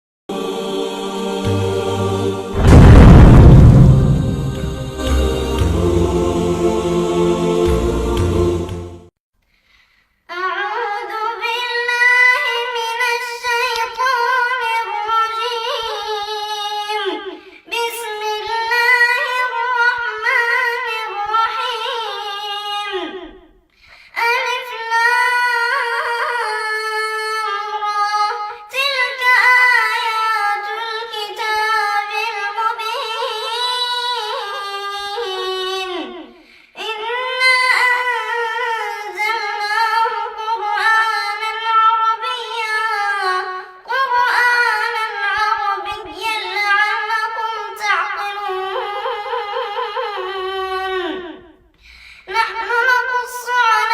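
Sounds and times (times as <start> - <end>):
intro music: 0.3 - 9.1
woman reciting melodically: 10.3 - 23.4, 24.2 - 51.6, 52.2 - 53.9.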